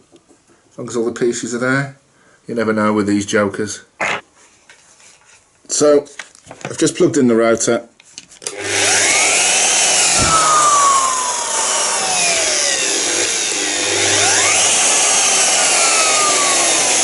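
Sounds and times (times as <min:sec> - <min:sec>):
electric router motor whine: 0:08.5 - 0:17.0.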